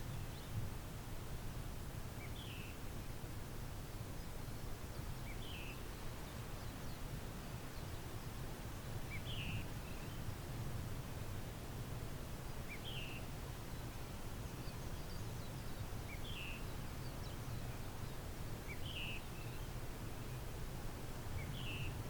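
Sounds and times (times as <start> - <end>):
faint bird chirps: 21.4 - 22.0.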